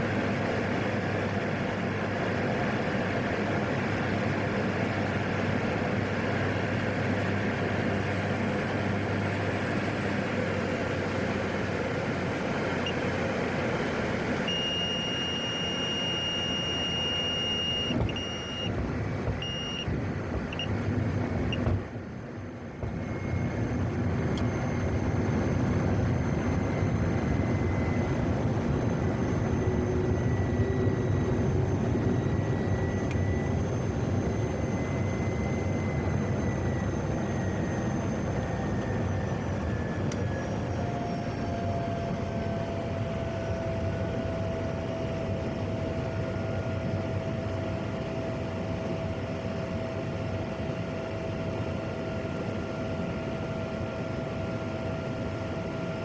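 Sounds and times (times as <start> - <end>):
turboprop engine whine: 0.0 - 56.0
short electronic beeps: 14.4 - 18.8, 19.4 - 19.9
high electronic tone: 14.5 - 19.9.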